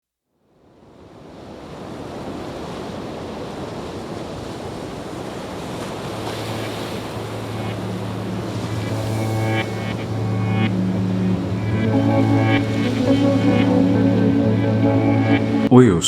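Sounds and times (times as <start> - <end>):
low sustained tone: 6.1 - 15.7.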